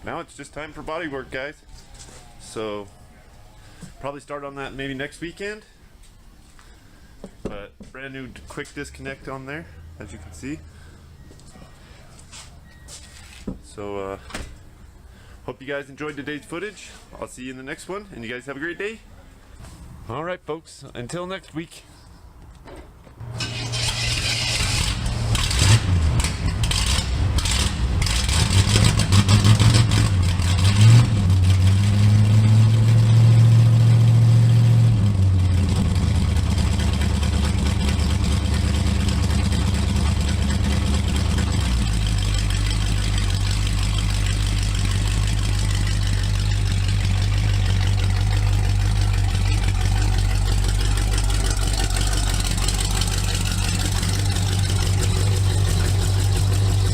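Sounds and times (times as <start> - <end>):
race car engine revving: 23.2 - 56.9
race car engine idling: 23.6 - 56.9.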